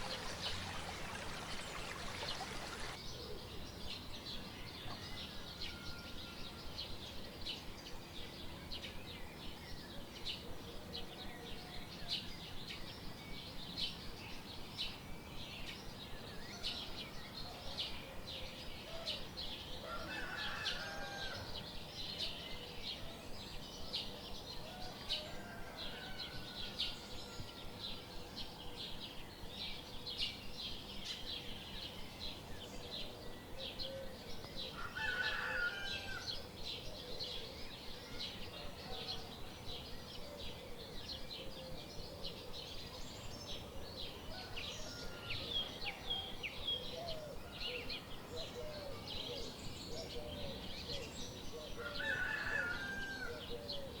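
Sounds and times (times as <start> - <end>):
small birds chirping: 0.0 - 3.1.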